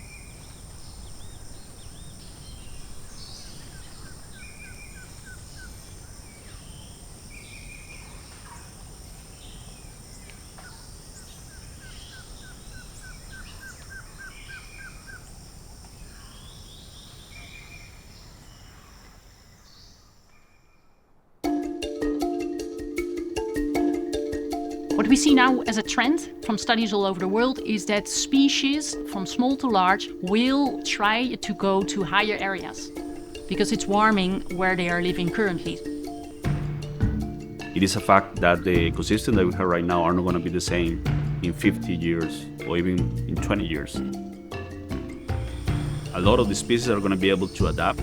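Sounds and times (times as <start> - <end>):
high insect drone: 0.0 - 20.3, 22.3 - 48.0
bird trilling: 0.0 - 20.9, 23.4 - 48.0
bird calling quick notes: 24.8 - 48.0.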